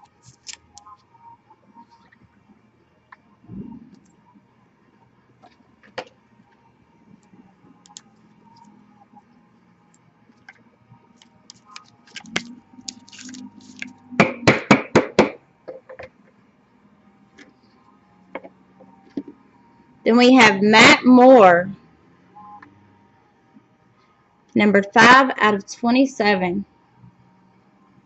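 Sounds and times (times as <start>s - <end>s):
packaging rustling: 0.2s - 0.6s, 11.2s - 14.0s.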